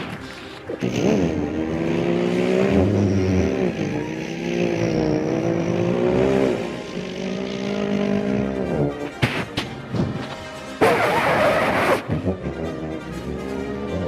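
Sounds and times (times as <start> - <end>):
man imitating car engine: 11.0 - 13.1.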